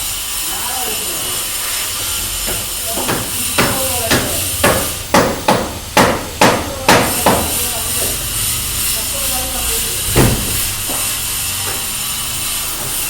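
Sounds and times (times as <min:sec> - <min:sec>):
hammer strikes: 0:02.4 - 0:08.2, 0:10.1 - 0:12.0.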